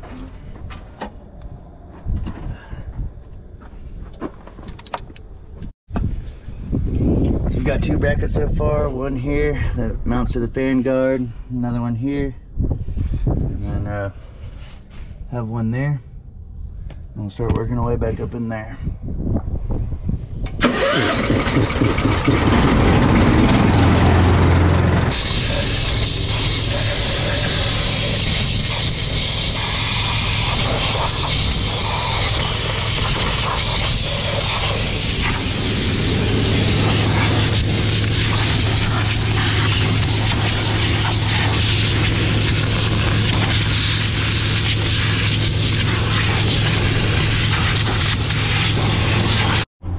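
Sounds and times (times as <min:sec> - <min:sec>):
heavy machine engine running: 0:20.6 - 0:31.7, 0:32.4 - 0:49.9
low steady rumble: 0:33.8 - 0:47.5.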